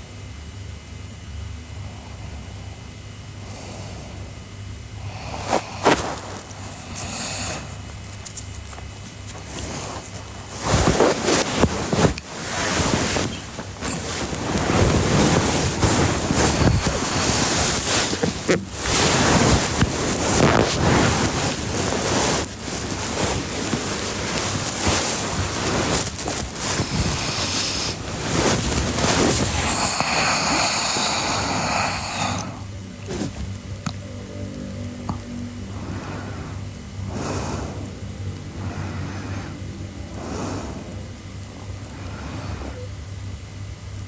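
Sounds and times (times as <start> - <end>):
girl snoring loudly: 5.0 - 7.8, 26.5 - 32.8.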